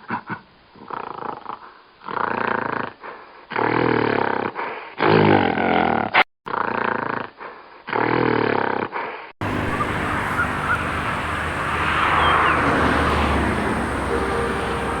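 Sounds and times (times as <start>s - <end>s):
animal call: 9.4s - 15.0s
outdoor background noise: 9.4s - 15.0s.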